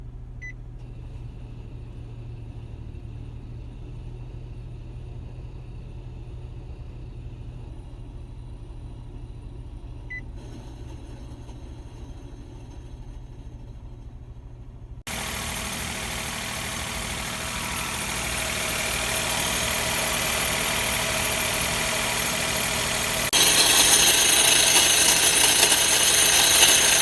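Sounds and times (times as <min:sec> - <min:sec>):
car engine idling: 0:15.1 - 0:27.0.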